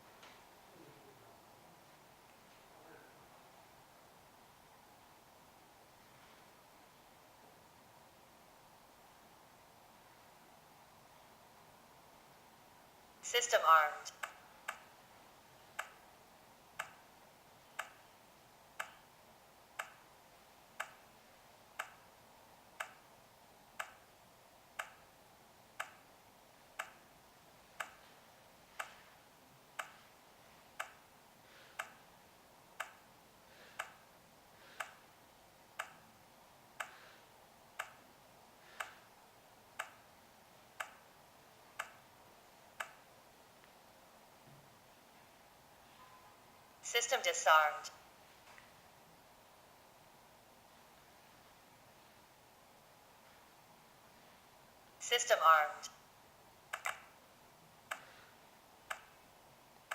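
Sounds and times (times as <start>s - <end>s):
alarm panel ticking: 15.7s - 16.0s, 16.8s - 17.1s, 17.7s - 18.1s, 18.8s - 19.1s, 19.8s - 20.1s, 20.8s - 21.1s, 21.8s - 22.1s, 22.8s - 23.1s, 23.8s - 24.1s, 24.7s - 25.1s, 25.8s - 26.1s, 26.7s - 27.1s, 27.8s - 28.0s, 29.8s - 30.0s, 30.8s - 31.1s, 32.8s - 33.1s, 35.8s - 36.1s, 37.8s - 38.1s, 39.7s - 40.0s, 40.8s - 41.1s, 41.8s - 42.0s, 42.8s - 43.0s.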